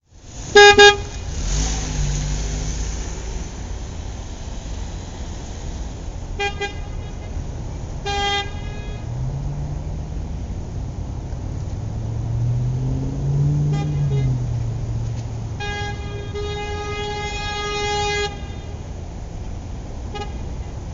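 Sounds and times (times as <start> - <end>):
car horn honking: 0.4 - 1.6, 6.4 - 9.4, 13.5 - 19.0, 20.1 - 20.9.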